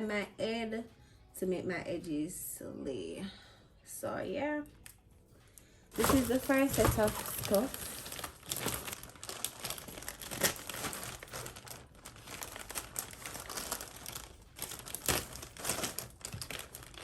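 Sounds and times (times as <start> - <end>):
packaging crinkling: 6.0 - 17.0.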